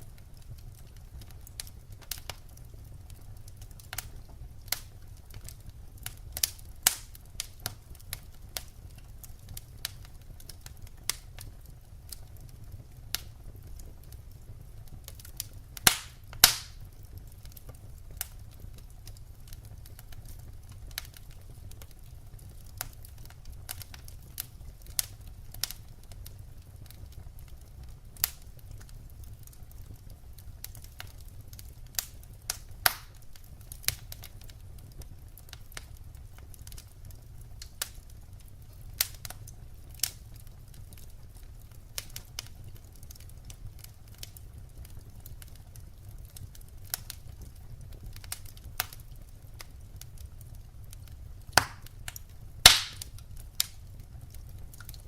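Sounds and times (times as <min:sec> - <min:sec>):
wood fire crackling: 0:00.0 - 0:55.0.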